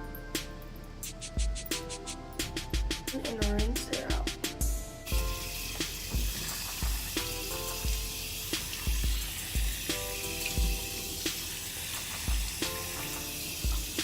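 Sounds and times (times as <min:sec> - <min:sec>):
background music with deep beat: 0:00.0 - 0:14.0
tap water running: 0:05.0 - 0:14.0.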